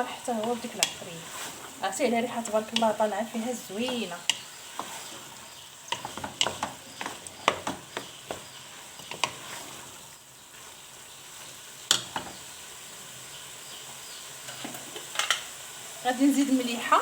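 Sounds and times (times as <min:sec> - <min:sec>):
food sizzling in a pan: 0:00.0 - 0:17.0
utensil scraping and knocking pan: 0:02.4 - 0:09.9.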